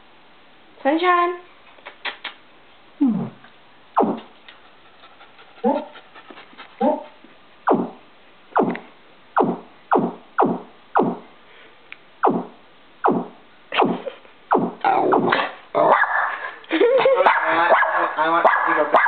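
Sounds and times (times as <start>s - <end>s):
synthesized zaps falling in pitch: 4.0s - 4.4s, 7.7s - 8.8s, 9.4s - 11.3s, 12.2s - 15.6s.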